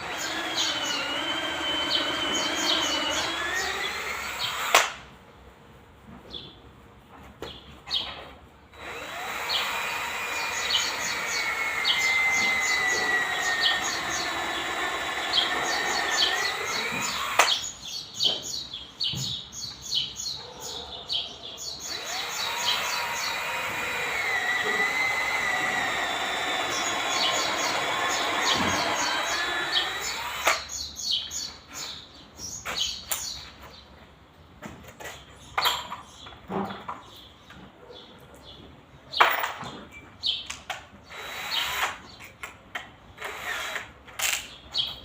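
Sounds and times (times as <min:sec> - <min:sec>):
electric power tool running: 0:00.0 - 0:05.0, 0:08.7 - 0:17.6, 0:21.9 - 0:30.7, 0:41.1 - 0:42.0
birds chirping: 0:00.0 - 0:05.5, 0:07.4 - 0:43.8, 0:44.4 - 0:45.0.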